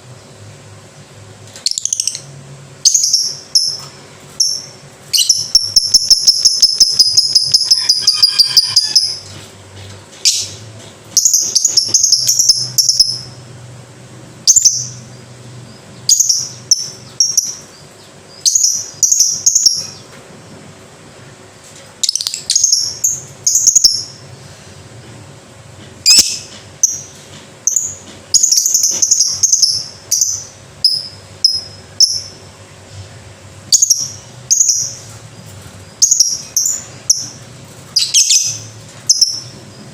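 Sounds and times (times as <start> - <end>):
lovebird chattering: 1.6 - 3.8, 4.4 - 9.2, 11.2 - 13.4, 26.1 - 32.4, 33.7 - 35.1, 36.0 - 37.4, 38.0 - 39.5.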